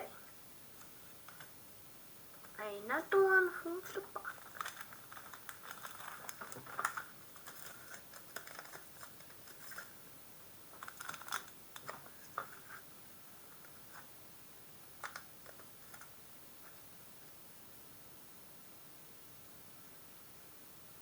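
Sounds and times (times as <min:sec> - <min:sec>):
trading cards and wrappers rustling: 0:03.8 - 0:10.0, 0:10.7 - 0:12.9, 0:15.0 - 0:16.2.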